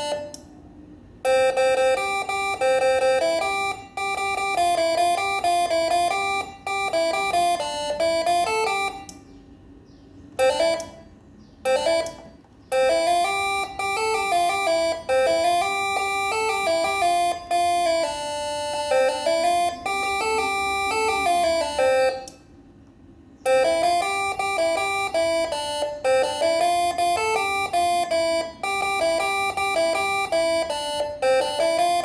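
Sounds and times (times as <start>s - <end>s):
horn playing quick melody: 12.8s - 22.2s.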